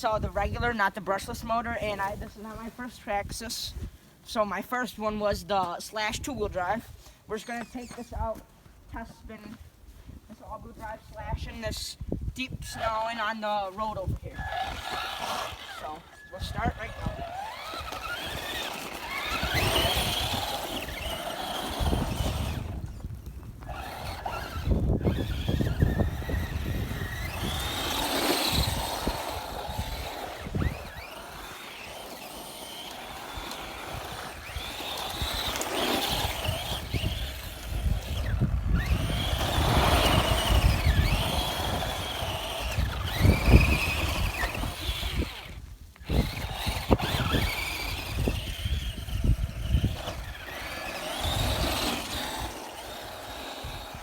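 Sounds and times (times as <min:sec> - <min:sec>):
electric motor whining: 0:12.6 - 0:54.0.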